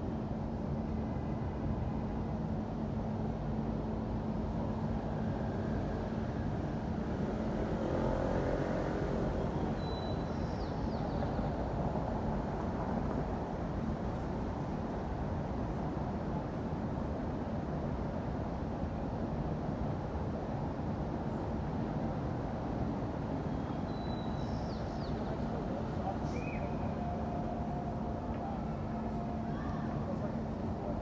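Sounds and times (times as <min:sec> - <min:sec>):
cars passing on street: 0:05.0 - 0:10.3.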